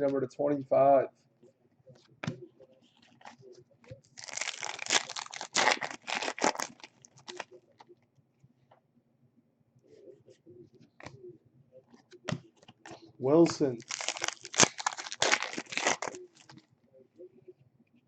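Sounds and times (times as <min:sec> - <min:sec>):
card pack wrapper tearing: 0:04.2 - 0:07.4, 0:13.4 - 0:16.6.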